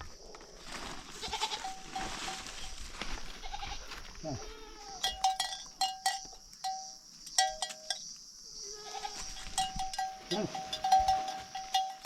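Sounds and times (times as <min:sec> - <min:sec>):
livestock bell clanking: 0:05.0 - 0:08.1, 0:09.4 - 0:12.0.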